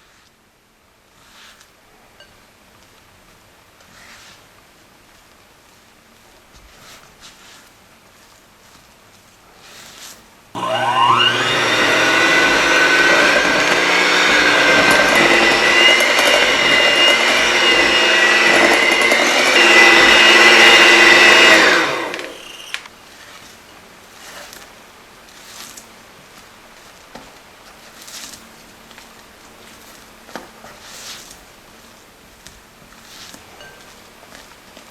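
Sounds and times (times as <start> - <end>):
blender motor whine: 10.6 - 22.9.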